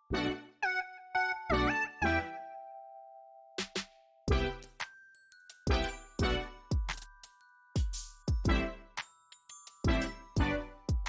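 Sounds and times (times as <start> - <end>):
music with punchy beats: 3.6 - 4.8, 5.7 - 7.2, 7.8 - 9.0, 9.8 - 11.0.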